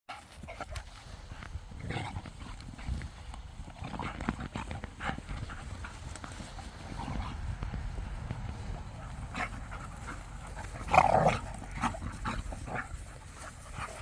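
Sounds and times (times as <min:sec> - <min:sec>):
paws and bodies scuffling: 0:00.1 - 0:14.0
dog vocal sounds: 0:09.0 - 0:14.0.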